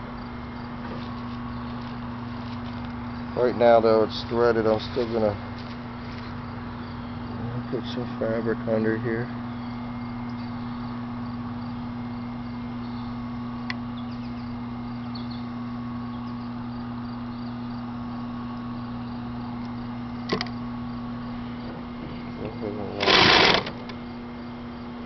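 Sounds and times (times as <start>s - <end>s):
sewing machine motor hum: 21.7s - 23.9s.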